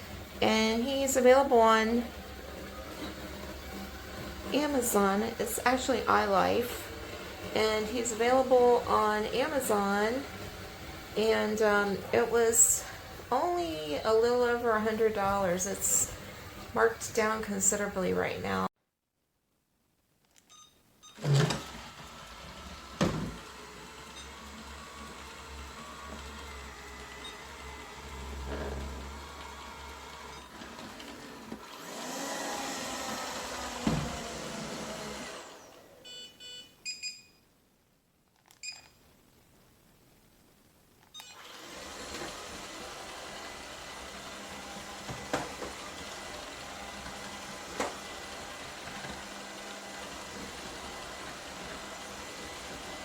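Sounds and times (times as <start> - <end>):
robot vacuum motor hum: 21.2 - 35.9, 41.3 - 53.0.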